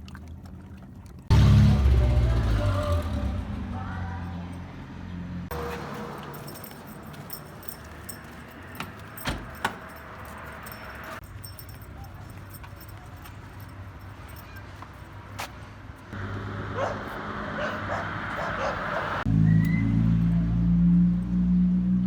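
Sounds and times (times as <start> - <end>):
metal pieces jingling: 5.9 - 15.1.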